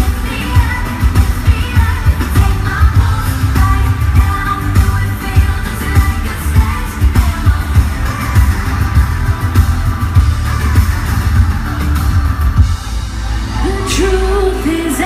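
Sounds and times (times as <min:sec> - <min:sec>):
voices singing pop: 0:00.0 - 0:10.2, 0:13.4 - 0:15.0
heavy bass beat: 0:00.0 - 0:14.6.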